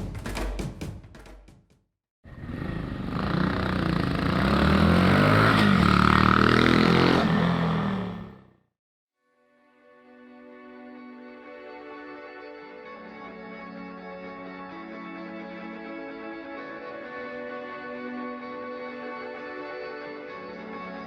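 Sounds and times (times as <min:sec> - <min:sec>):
drum hits: 0:00.0 - 0:01.8
motorcycle engine revving: 0:02.3 - 0:08.6.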